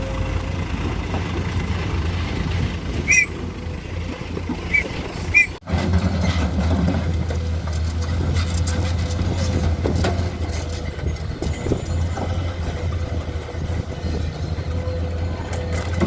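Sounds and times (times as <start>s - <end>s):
heavy diesel engines running: 0.0s - 16.0s
short high-pitched squeaks: 3.1s - 3.4s, 4.6s - 5.6s.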